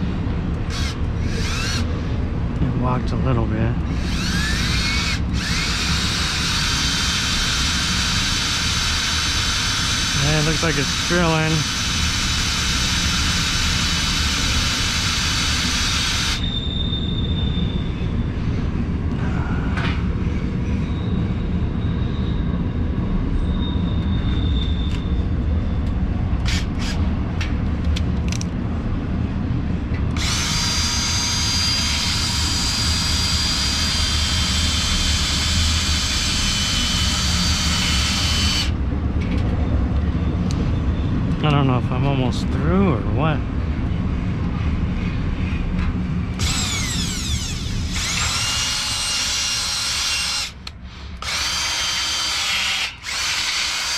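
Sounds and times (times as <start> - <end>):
electric drill cutting steel: 0.7 - 1.9, 3.9 - 16.5, 26.4 - 27.1, 30.2 - 38.8, 46.4 - 53.9.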